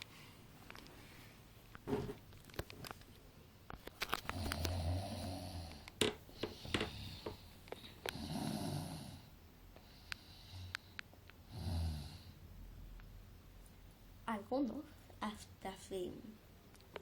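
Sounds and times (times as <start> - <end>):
person snoring: 4.3 - 5.9, 8.0 - 9.3, 11.4 - 12.4.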